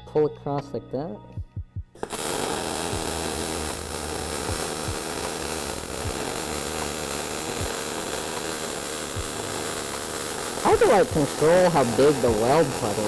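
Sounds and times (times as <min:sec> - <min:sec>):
electric arc welder crackling hiss: 0:02.0 - 0:13.0.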